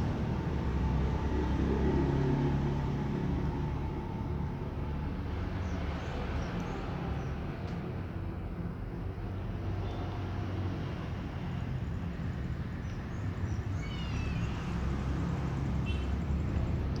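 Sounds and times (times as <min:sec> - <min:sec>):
distant traffic rumble: 0:13.5 - 0:17.0.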